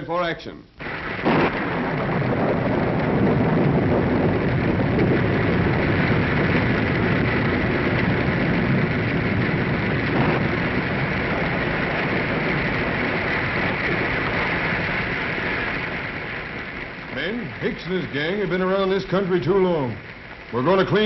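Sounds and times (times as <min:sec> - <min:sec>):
wind and rain rushing: 0:00.7 - 0:21.0.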